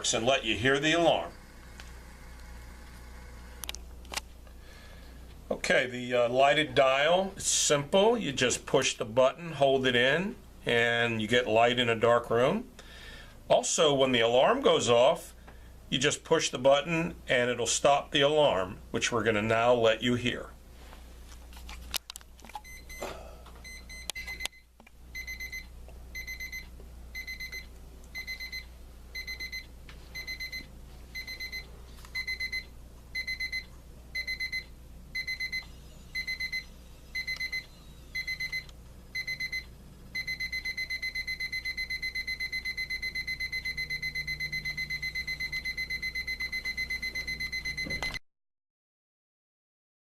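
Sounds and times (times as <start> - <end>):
alarm clock beeping: 23.6 - 24.6, 25.2 - 26.6, 27.2 - 48.2.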